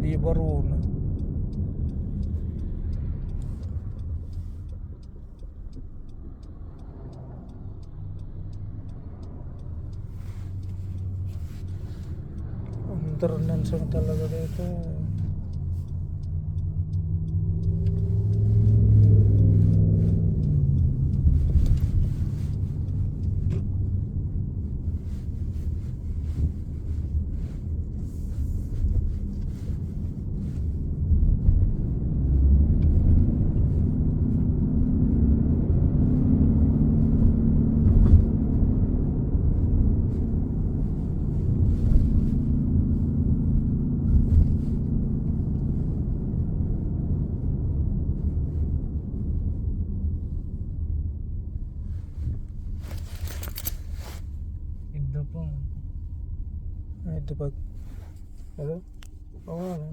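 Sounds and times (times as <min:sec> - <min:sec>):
low vehicle rumble: 0:00.0 - 0:59.9.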